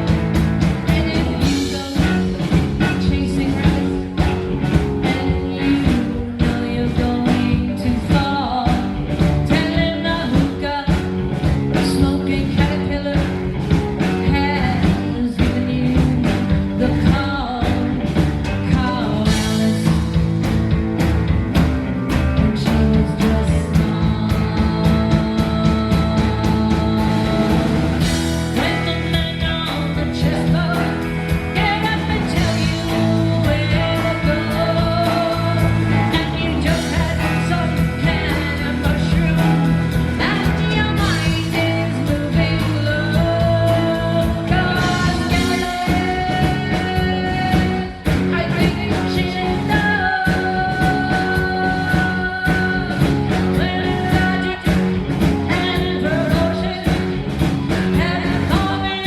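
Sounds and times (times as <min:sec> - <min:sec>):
person singing: 0:00.0 - 0:20.6, 0:22.1 - 0:59.0
live rock band: 0:00.0 - 0:59.0.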